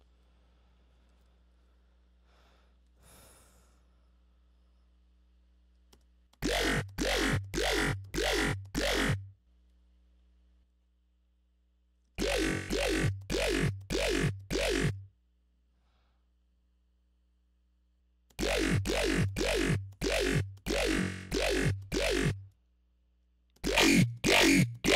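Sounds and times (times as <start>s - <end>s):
heavy sub-bass: 6.4s - 9.3s, 12.2s - 15.0s, 18.4s - 22.4s, 23.6s - 24.9s
synth bass notes with falling pitch: 6.4s - 9.3s, 12.2s - 15.1s, 18.4s - 22.5s, 23.6s - 24.9s.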